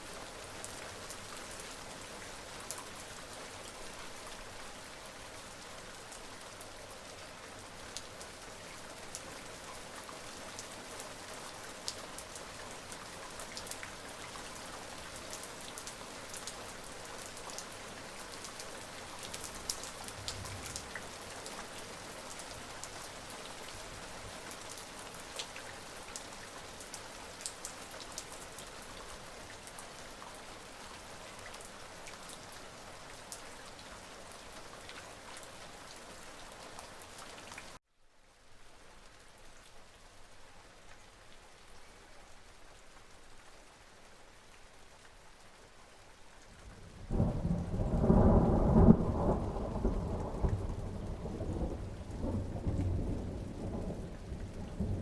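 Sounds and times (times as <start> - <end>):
steady rain falling: 0.0 - 55.0
raindrops clicking on a surface: 17.5 - 21.8, 24.4 - 28.4, 46.7 - 55.0.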